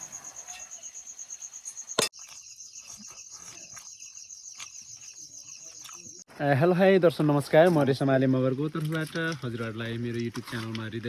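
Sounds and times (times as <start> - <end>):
insects chirring: 0.0 - 6.2.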